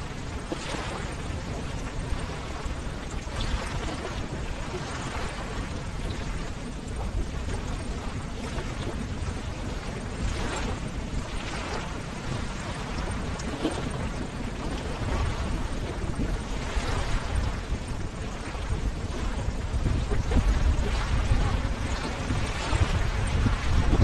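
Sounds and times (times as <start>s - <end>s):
ocean waves surf: 0.0s - 24.0s.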